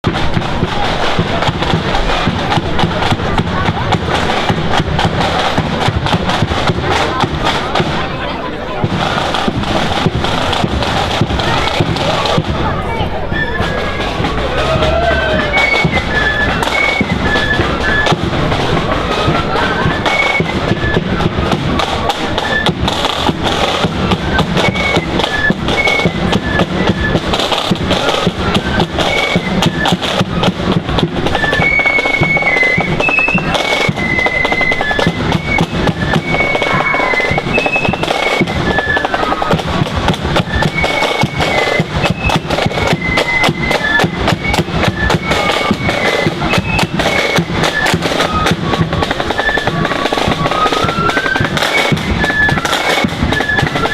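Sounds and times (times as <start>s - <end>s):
bass drum beats: 0.0s - 8.1s, 8.8s - 31.4s
snare drumming: 0.0s - 53.9s
flutes playing melody: 0.1s - 53.9s.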